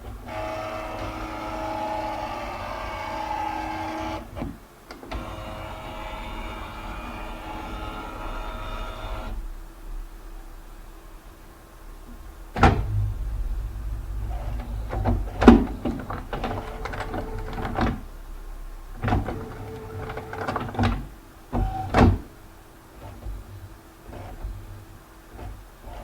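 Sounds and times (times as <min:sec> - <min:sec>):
scanner carriage motor whirring: 0:05.1 - 0:09.4
low steady hum: 0:06.1 - 0:23.8
sharp mechanical clunks and clicks: 0:14.4 - 0:18.1, 0:19.0 - 0:22.3.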